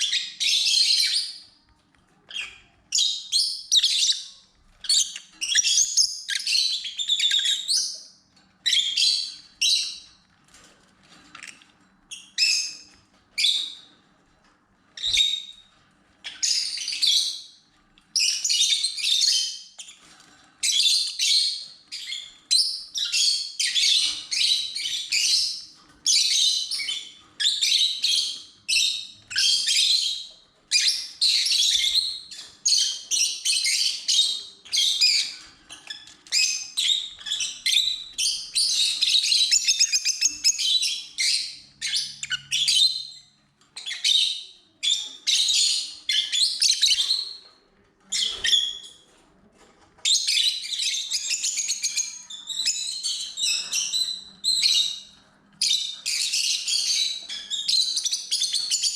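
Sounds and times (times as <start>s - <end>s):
lovebirds chattering: 18.2s - 47.5s.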